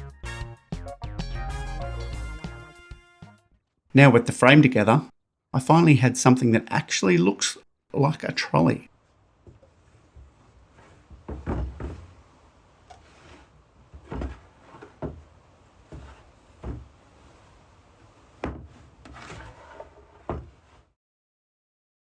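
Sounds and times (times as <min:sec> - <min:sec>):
wooden knocks and thuds: 0:09.4 - 0:20.9.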